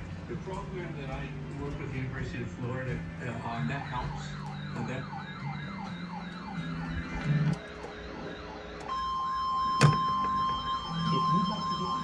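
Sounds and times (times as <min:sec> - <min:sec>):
steady warning alarm tone: 0:00.0 - 0:12.0
alert siren wailing: 0:03.2 - 0:12.0.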